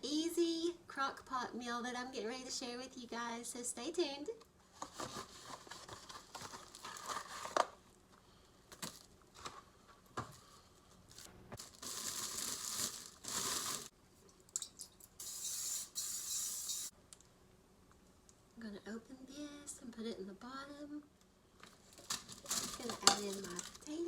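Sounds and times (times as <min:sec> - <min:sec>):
plastic packaging crinkling: 0:04.8 - 0:07.8, 0:11.1 - 0:13.9, 0:21.7 - 0:24.0.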